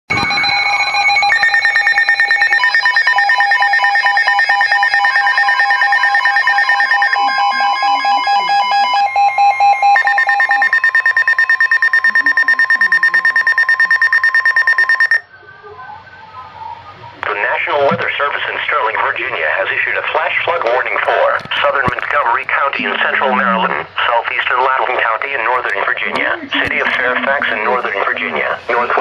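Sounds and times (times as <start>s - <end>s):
electronic alarm tones beeping: 0.1s - 15.3s, 21.8s - 23.9s.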